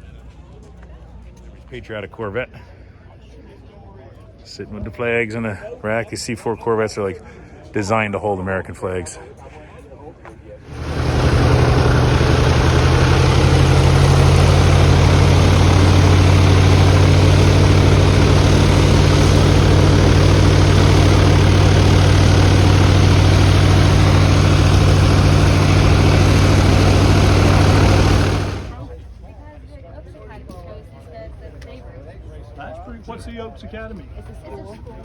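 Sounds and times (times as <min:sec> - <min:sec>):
engine idling: 0:10.7 - 0:28.8.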